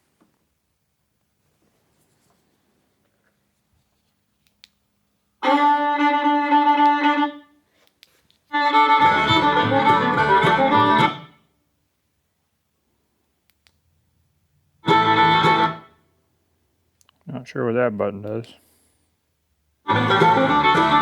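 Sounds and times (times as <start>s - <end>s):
music from radio: 8.8s - 11.2s
heavy bass line: 9.0s - 11.2s.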